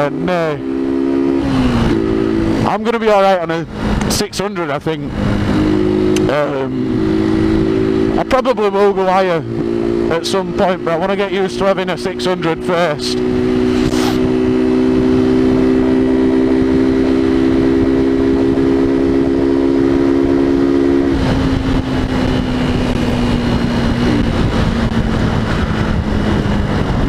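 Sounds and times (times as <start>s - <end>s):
motorcycle engine running: 0.0s - 4.2s, 5.0s - 27.0s
wind rushing: 13.2s - 27.0s.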